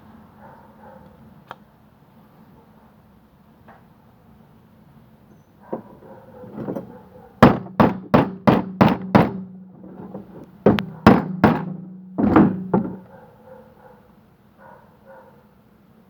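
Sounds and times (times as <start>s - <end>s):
hammer-like knocks: 5.7s - 13.1s
steady low hum: 5.7s - 13.1s.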